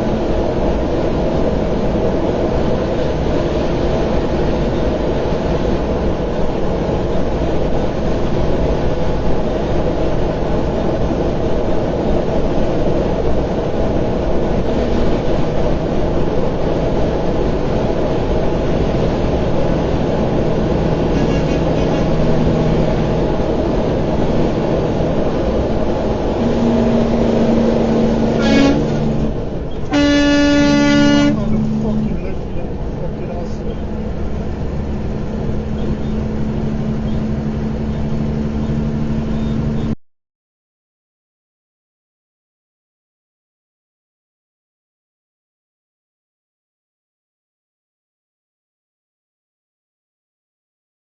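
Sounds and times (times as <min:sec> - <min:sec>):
vehicle engine and road noise: 0:00.0 - 0:40.0.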